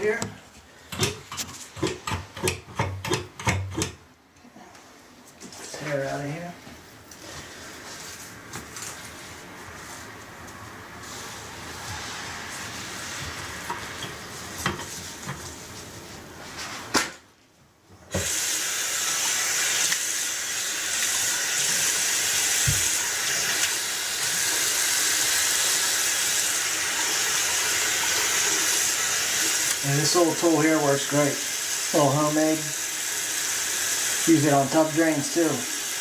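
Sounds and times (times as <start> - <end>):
faucet running into sink: 18.1 - 36.0.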